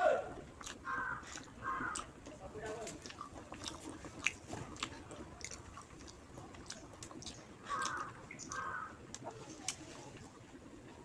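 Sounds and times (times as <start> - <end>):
wet chewing and smacking: 0.4 - 9.8.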